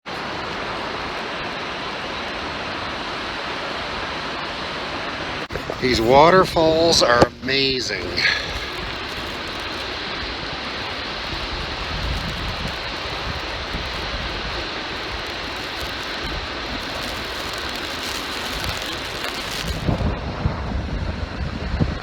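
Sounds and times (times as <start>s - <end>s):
waterfall rushing: 0.3s - 20.1s
wind rumble on microphone: 5.1s - 7.4s, 8.0s - 22.0s.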